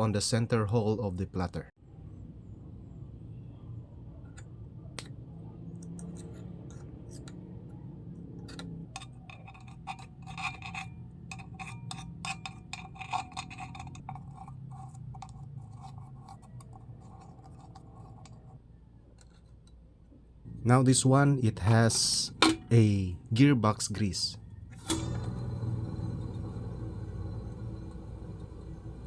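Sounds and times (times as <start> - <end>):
steady low hum: 24.3 - 29.0.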